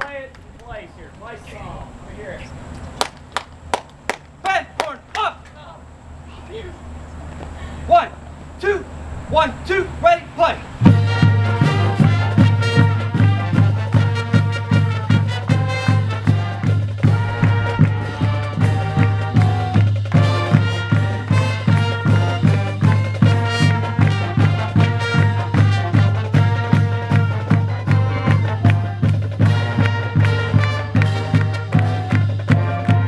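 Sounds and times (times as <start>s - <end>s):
marching band playing: 7.9s - 33.0s
steady drum beat: 10.8s - 33.0s.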